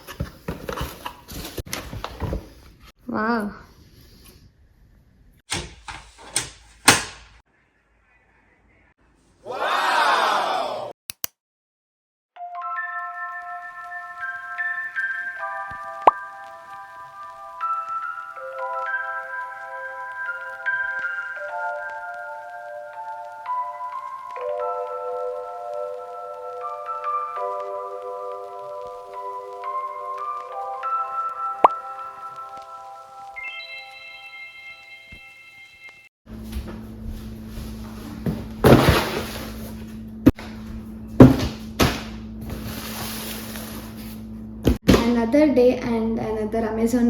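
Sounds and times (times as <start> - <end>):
sharp click: 11.1 - 11.4
bell-like mallet melody: 33.4 - 36.0.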